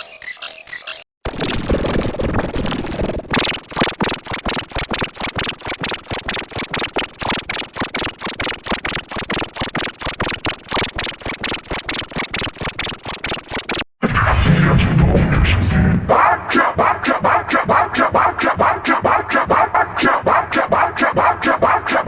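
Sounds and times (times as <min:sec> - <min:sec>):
electronic stutter effect: 0:00.0 - 0:13.9.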